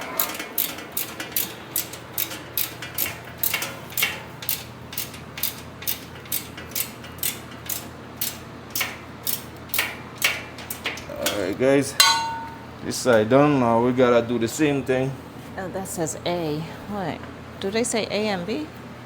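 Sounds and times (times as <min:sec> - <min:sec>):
ratchet wrench clicking: 0:00.2 - 0:11.4.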